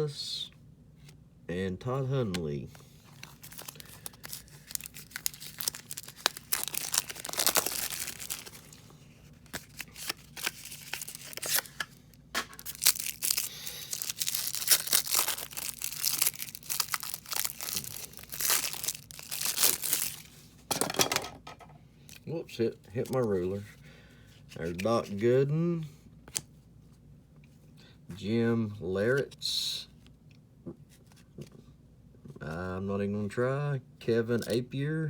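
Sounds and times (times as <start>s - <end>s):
wrapper tearing and crinkling: 3.2s - 8.8s, 9.5s - 11.8s, 12.5s - 20.3s.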